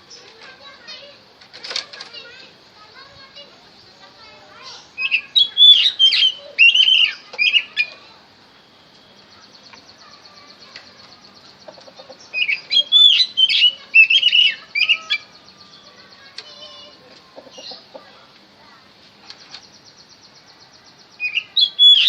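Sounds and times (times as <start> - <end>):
faint rapid bird trill: 0.0 - 22.0
bird singing whistled phrases: 4.6 - 8.0, 12.3 - 17.0, 21.2 - 22.0.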